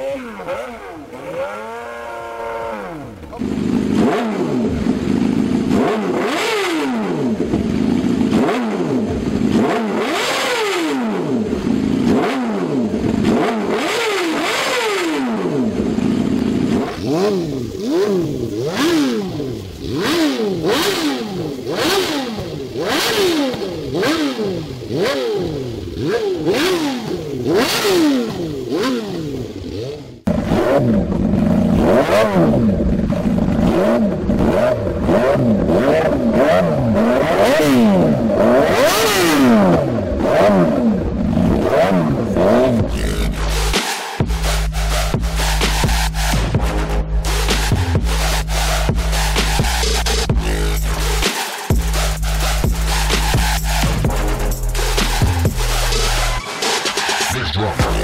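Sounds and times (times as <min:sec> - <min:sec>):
motorcycle engine throttle blips: 0:00.0 - 0:56.4
steady engine note: 0:00.0 - 0:56.4, 0:57.2 - 0:58.0.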